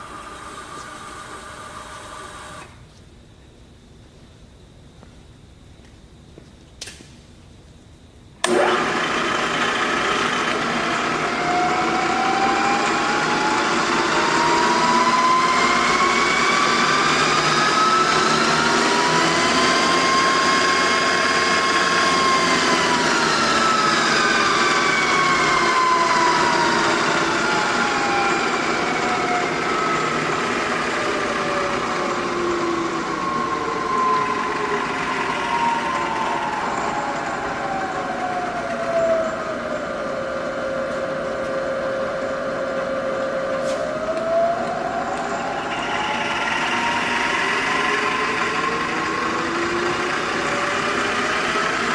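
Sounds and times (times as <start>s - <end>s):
milling machine spindle whine: 0.0s - 3.2s, 8.4s - 51.9s.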